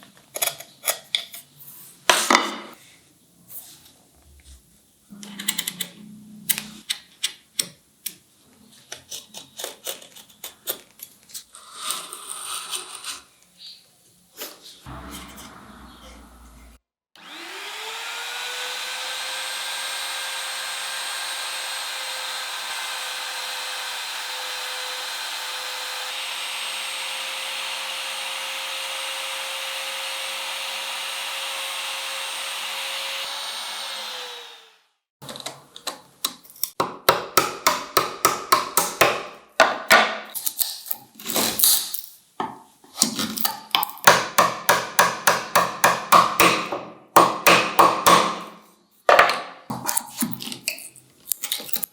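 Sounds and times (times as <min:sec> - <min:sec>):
power tool spinning: 0:17.2 - 0:34.9
sharp strikes on wood: 0:43.8 - 0:49.9.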